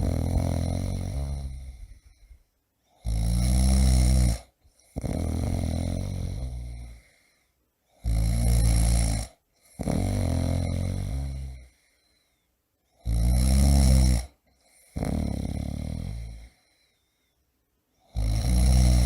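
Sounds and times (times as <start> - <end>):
man snoring loudly: 0.0 - 2.0, 3.0 - 7.1, 8.0 - 11.7, 13.0 - 16.6, 18.1 - 19.0.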